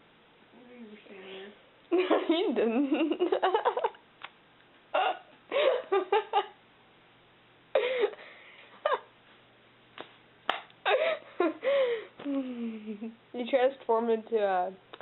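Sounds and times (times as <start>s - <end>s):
person giggling: 5.0s - 6.6s, 10.8s - 13.2s.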